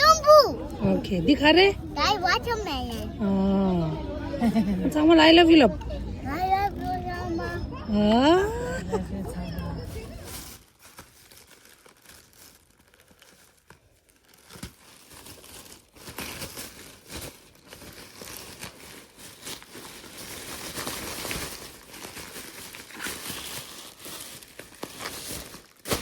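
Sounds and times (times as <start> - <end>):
gift packaging crinkling and tearing: 0.0 - 0.5, 8.6 - 26.0.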